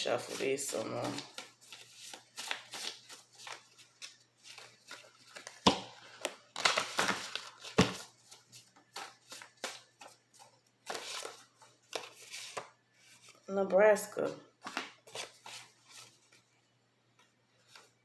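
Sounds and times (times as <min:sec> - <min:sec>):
cards being shuffled: 0:00.0 - 0:13.5.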